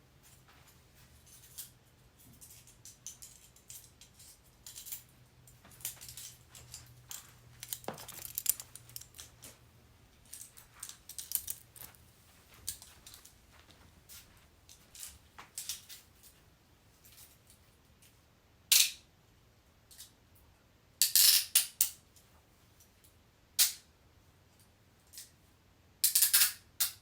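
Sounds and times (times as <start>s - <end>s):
metal handcuffs clicking: 2.4s - 9.6s, 10.2s - 12.0s, 26.0s - 27.0s.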